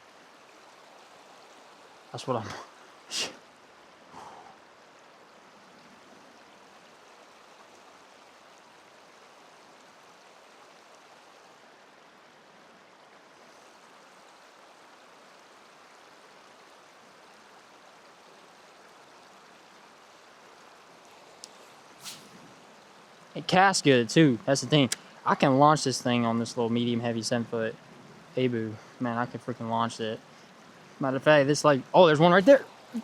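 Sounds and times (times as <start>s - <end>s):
river water flowing: 0.0s - 33.0s
voice burst: 2.4s - 3.4s.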